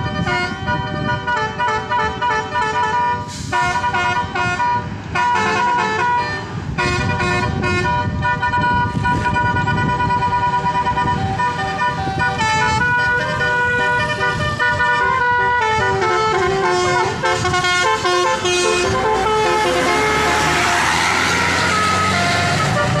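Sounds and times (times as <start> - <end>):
multi-note air horn tune: 0.0 - 23.0
rushing noise: 8.9 - 23.0.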